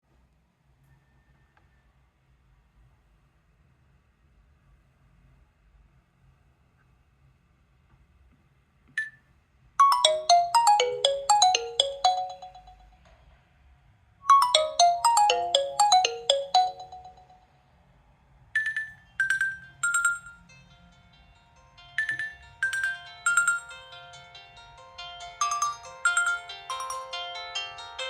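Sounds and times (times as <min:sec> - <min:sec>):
spaced single tone notes: 0:09.8 - 0:12.8
bell-like ringtone notes: 0:09.8 - 0:13.0, 0:14.3 - 0:17.4.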